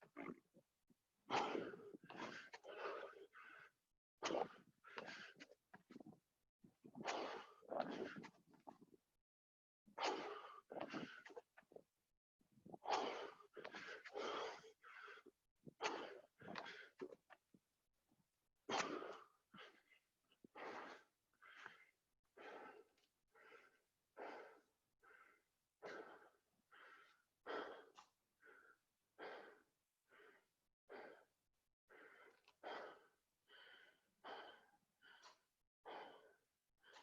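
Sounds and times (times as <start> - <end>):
person panting hard: 1.3 - 3.8, 20.5 - 37.0.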